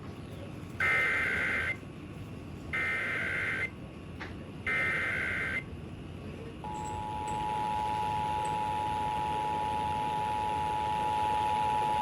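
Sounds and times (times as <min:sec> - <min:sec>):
two-tone attention signal: 0:06.7 - 0:12.0.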